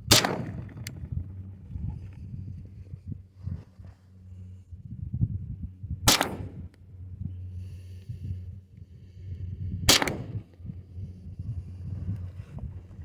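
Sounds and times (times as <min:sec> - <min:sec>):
wind rumble on microphone: 0:00.0 - 0:13.0
gunshots: 0:00.1 - 0:00.7, 0:06.1 - 0:06.6.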